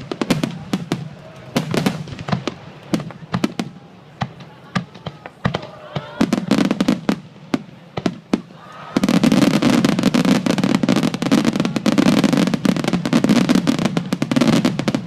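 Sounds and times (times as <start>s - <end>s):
firework crackle and pops: 0.0s - 15.0s.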